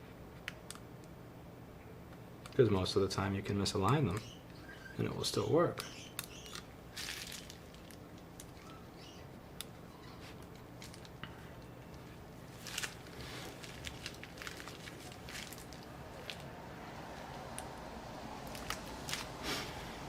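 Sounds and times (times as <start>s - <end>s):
steady low hum: 0.0s - 20.0s
hands rustling cables: 6.2s - 20.0s.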